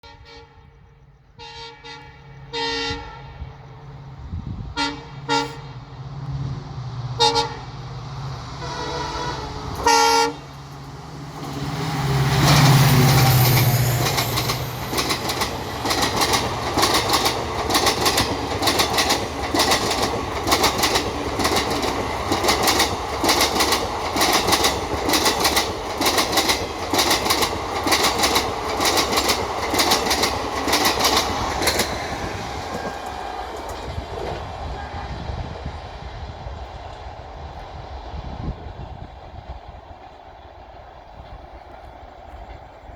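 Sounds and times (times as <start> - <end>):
locomotive horn honking: 0.0 - 3.6, 4.8 - 5.9, 7.2 - 7.8, 8.6 - 10.6, 34.6 - 35.5
diesel locomotive engine: 0.0 - 42.9
wheels clacking over rail joints: 9.6 - 34.8.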